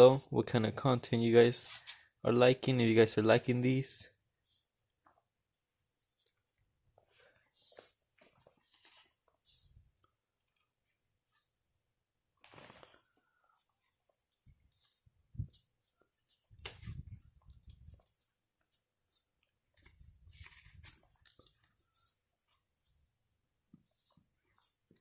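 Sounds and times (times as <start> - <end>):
rustling: 12.4 - 23.1.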